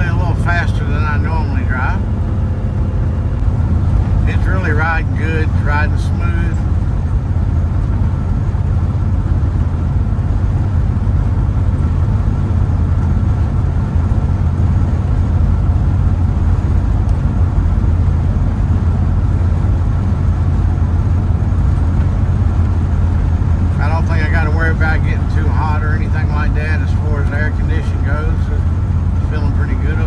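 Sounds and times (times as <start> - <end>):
engine drone inside vehicle: 0.0 - 30.0.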